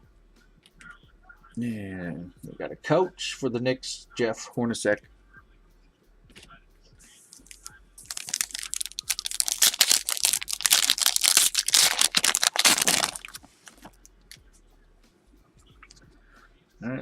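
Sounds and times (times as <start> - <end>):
foil wrapper crinkling and tearing: 7.3 - 14.0.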